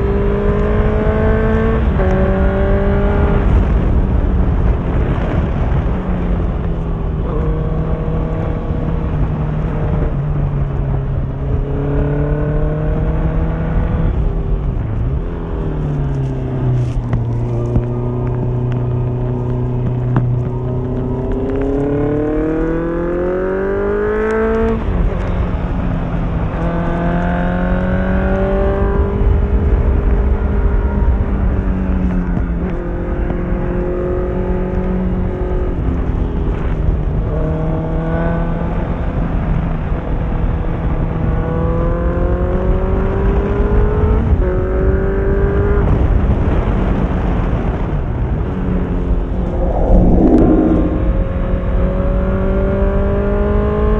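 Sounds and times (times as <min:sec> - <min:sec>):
low rush of wind: 0:00.0 - 0:41.1, 0:44.2 - 0:53.9
motorcycle engine accelerating: 0:47.7 - 0:53.9.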